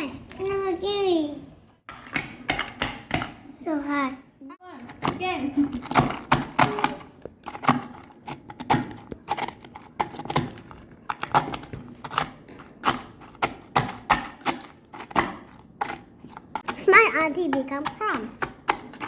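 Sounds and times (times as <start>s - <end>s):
cookies being smashed: 4.9s - 19.0s.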